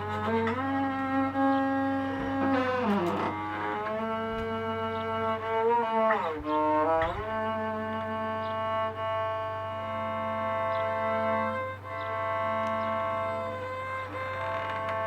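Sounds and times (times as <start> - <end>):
creaking door hinge squealing: 0.0 - 7.8, 10.8 - 15.0.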